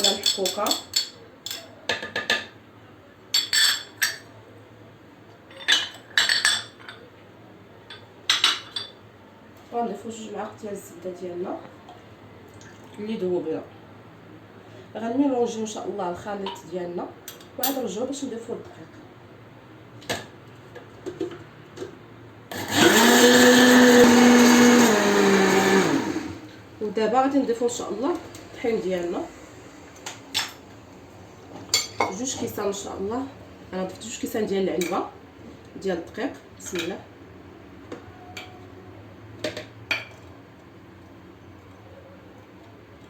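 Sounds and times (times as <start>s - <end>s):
utensils clinking against a bowl: 0.0s - 2.6s, 3.3s - 4.3s, 5.5s - 7.1s
electric mixer motor running: 22.5s - 26.5s.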